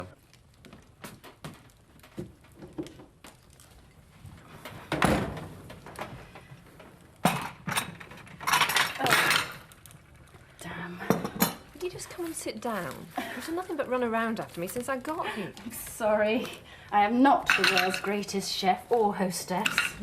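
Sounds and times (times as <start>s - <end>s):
dishes and cutlery clattering: 7.2s - 9.7s, 17.4s - 18.2s, 19.6s - 20.0s.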